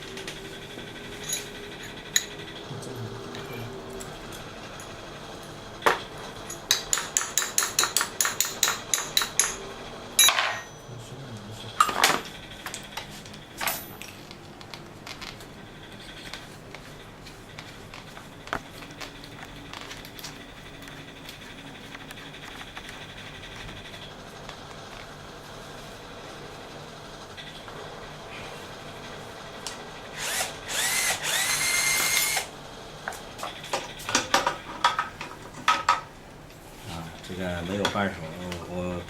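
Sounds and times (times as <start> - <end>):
metal tools clinking and knocking: 1.2 - 2.4, 6.4 - 9.6, 10.2 - 11.0, 13.6 - 14.2.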